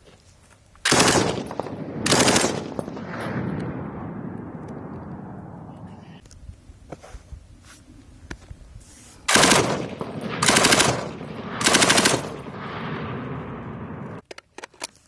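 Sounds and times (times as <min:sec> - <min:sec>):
machine gun bursts: 0:00.9 - 0:02.9, 0:09.3 - 0:12.5.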